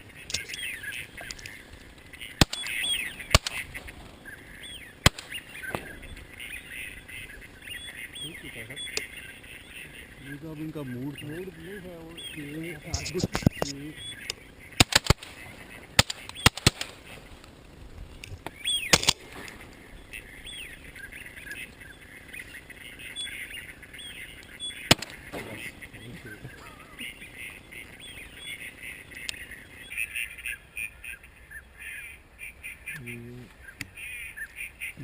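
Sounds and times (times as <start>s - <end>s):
ducks quacking: 0.0s - 35.0s
sharp clicks: 0.2s - 9.3s, 12.8s - 19.8s, 24.2s - 26.0s, 27.4s - 29.5s.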